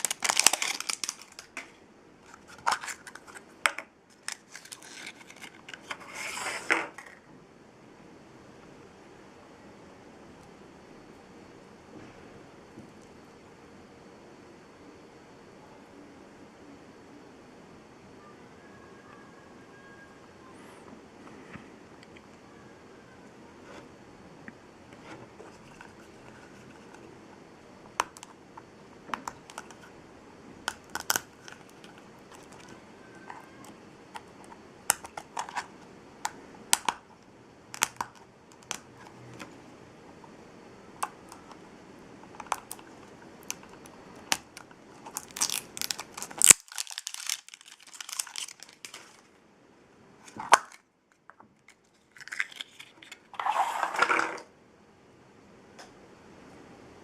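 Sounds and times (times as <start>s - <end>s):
wrapper crinkling and tearing: 0.0s - 1.7s, 2.3s - 3.5s, 4.1s - 6.0s, 42.4s - 49.3s, 51.7s - 53.7s.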